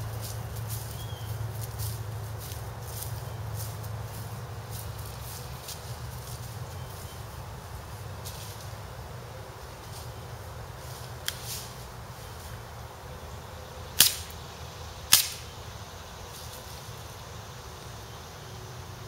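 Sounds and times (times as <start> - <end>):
airsoft gun shots: 14.0 - 14.3, 15.1 - 15.5.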